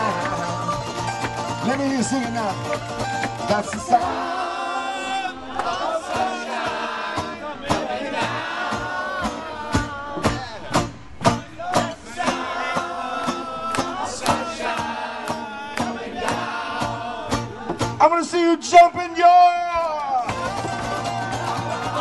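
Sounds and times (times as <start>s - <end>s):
live band music: 0.0s - 4.4s
crowd singing along: 0.0s - 18.1s, 20.3s - 22.0s.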